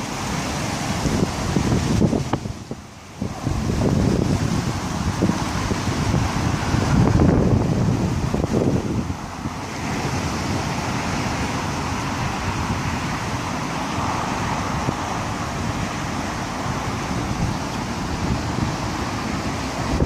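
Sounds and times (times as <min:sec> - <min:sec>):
storm wind gusting: 0:00.0 - 0:20.0
wind buffeting microphone: 0:00.0 - 0:20.0.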